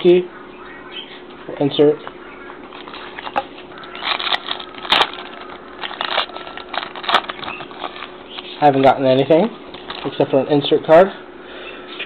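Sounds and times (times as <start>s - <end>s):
faint steady hum: 0.0s - 12.0s
trading cards and wrapper rustling: 2.7s - 9.0s, 9.7s - 10.3s.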